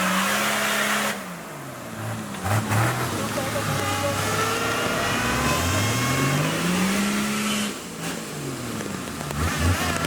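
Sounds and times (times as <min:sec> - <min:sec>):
engine revving hard: 0:02.4 - 0:07.8, 0:09.3 - 0:10.0.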